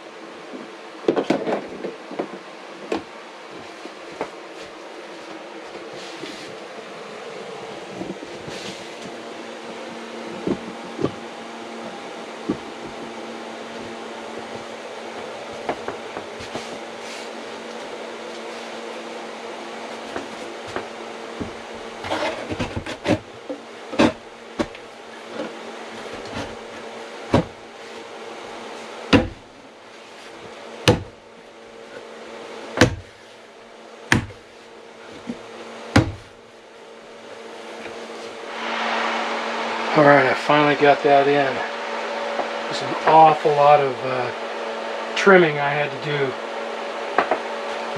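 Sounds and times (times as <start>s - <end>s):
steady mechanical hum: 0.0s - 47.9s
hammer knocking wood: 29.1s - 29.4s, 34.1s - 34.4s, 36.0s - 36.3s.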